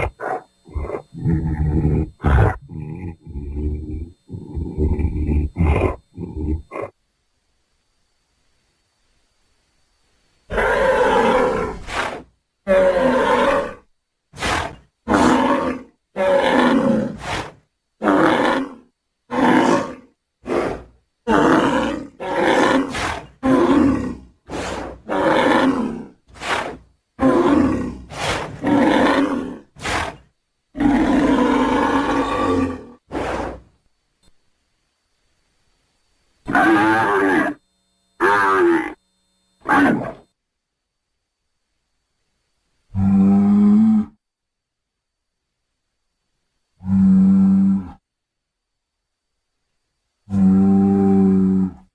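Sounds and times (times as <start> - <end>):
bull bellowing and grunting: 0.0 - 7.0, 10.5 - 33.7, 36.5 - 37.6, 38.2 - 39.0, 39.6 - 40.2, 42.9 - 44.2, 46.8 - 48.0, 50.3 - 51.9.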